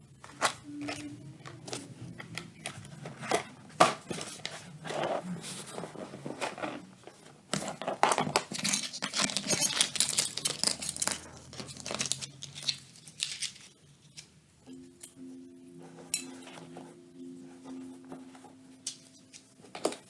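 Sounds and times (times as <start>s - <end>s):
faint low tones: 0.0s - 3.7s, 14.6s - 20.0s.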